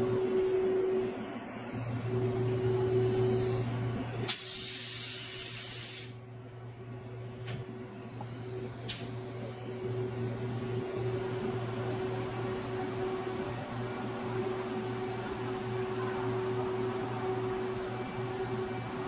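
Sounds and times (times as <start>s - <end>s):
machine hum: 0.0s - 19.0s
compressed air hiss: 4.2s - 6.2s.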